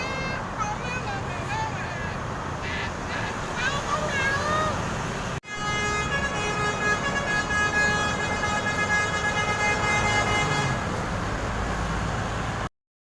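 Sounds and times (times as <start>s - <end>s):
engine and traffic rumble: 0.0s - 12.7s
bus musical horn chord: 5.5s - 10.9s.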